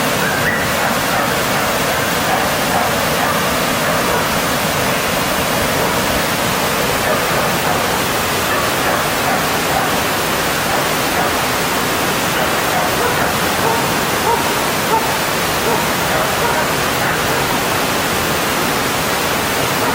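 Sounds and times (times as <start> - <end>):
stream rushing over rocks: 0.0 - 19.9.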